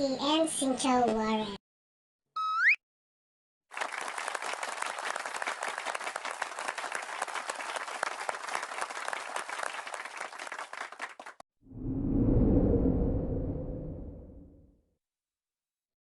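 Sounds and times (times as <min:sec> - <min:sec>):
crowd clapping: 0:03.7 - 0:11.4.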